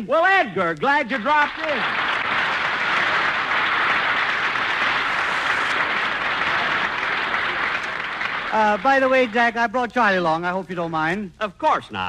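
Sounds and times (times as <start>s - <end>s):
audience applauding: 1.0s - 9.8s.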